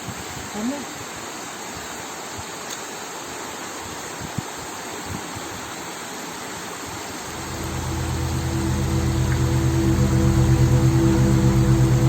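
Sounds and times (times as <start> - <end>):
waterfall rushing: 7.1 - 12.0
background music: 7.2 - 12.0.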